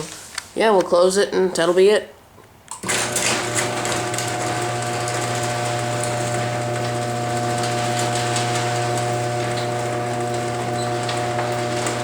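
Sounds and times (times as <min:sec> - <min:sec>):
garage door opener motor humming: 0:02.7 - 0:12.0.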